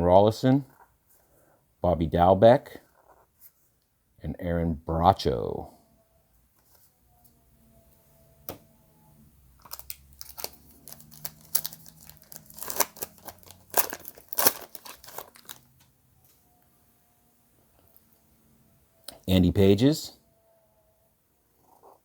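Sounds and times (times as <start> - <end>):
card pack wrapper tearing: 9.6 - 15.7.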